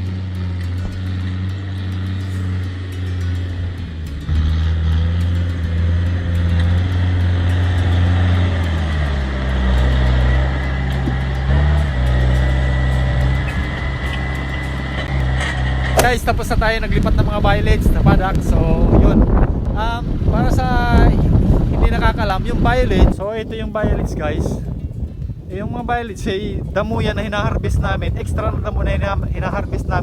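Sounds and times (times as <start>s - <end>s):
tractor engine under load: 0.0s - 30.0s.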